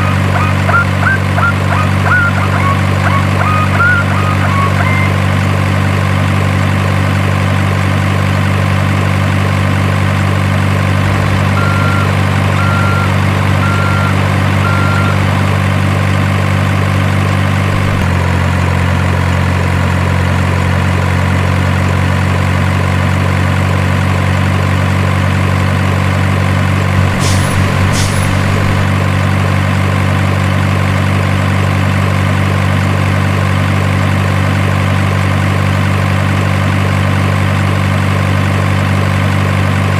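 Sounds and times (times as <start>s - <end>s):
short beeps: 0.0s - 5.4s, 11.6s - 15.2s, 27.0s - 29.0s
simulated diesel engine running: 0.0s - 39.9s
short air hisses: 27.0s - 29.0s.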